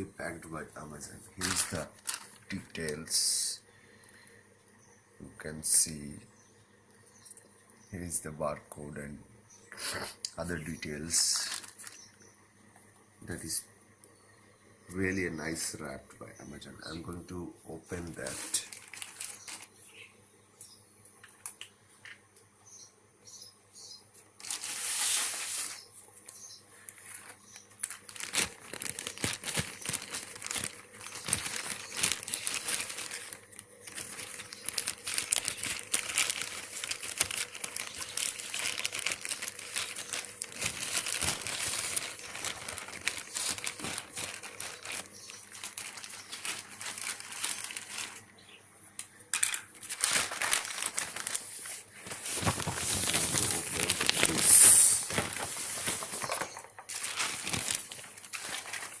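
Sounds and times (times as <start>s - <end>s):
packaging crinkling and tearing: 0.0s - 3.5s, 11.0s - 12.1s, 17.9s - 19.8s, 24.4s - 25.9s, 26.8s - 48.3s, 49.4s - 59.0s.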